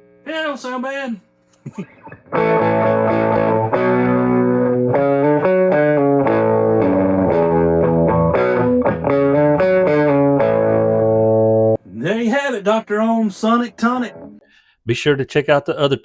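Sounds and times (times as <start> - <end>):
electric guitar chords: 1.6 - 11.8, 13.5 - 14.4.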